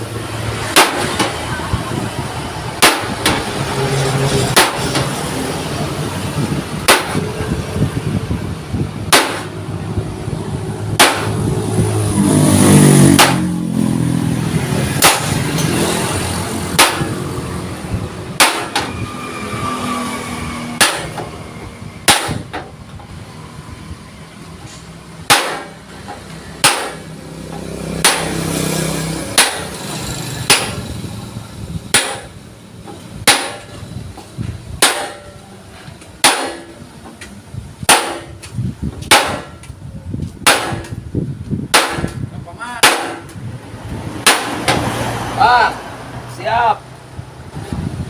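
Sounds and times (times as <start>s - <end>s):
hammer striking steel plate: 0.7s - 1.4s, 2.8s - 3.5s, 4.5s - 5.1s, 6.8s - 7.2s, 9.1s - 9.6s, 11.0s - 11.5s, 13.0s - 13.5s, 15.0s - 15.9s, 16.7s - 17.3s, 18.4s - 19.0s, 20.8s - 21.3s, 22.0s - 22.7s, 25.2s - 25.8s, 26.6s - 28.5s, 29.3s - 29.8s, 30.4s - 30.8s, 31.9s - 32.4s, 33.2s - 33.8s, 34.8s - 35.5s, 36.2s - 36.8s, 37.8s - 39.7s, 40.4s - 41.0s, 41.7s - 42.2s, 42.8s - 43.4s, 44.2s - 44.8s.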